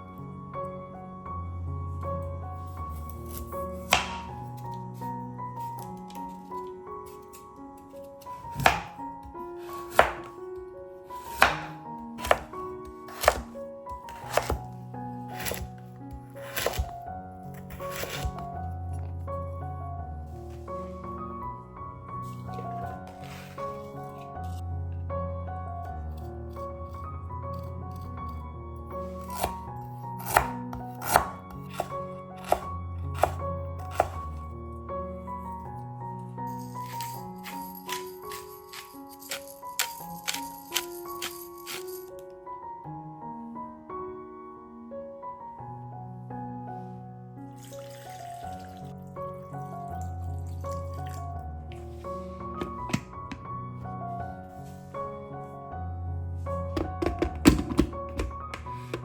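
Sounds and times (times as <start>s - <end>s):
soft background music: 0.0s - 59.0s
knife cutting on cutting board: 3.0s - 4.4s, 8.2s - 10.4s, 11.2s - 14.7s, 15.3s - 15.8s, 16.4s - 16.9s, 17.6s - 18.5s, 22.3s - 24.2s, 29.0s - 29.6s, 30.2s - 34.4s, 36.8s - 42.0s, 52.5s - 53.4s.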